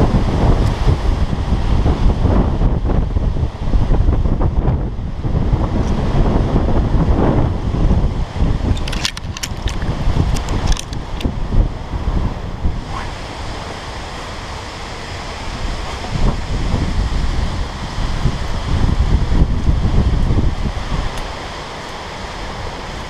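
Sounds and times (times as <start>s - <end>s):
wind buffeting microphone: 0.0s - 23.0s
sharp clicks: 8.8s - 11.3s.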